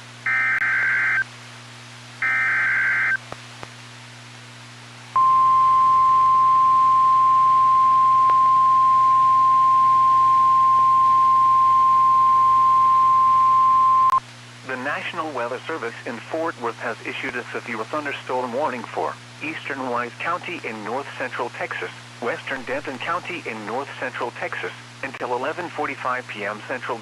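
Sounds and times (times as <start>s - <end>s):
steady warning alarm tone: 0.3s - 1.2s, 2.2s - 3.2s
buzzing digital data bursts: 2.2s - 3.2s.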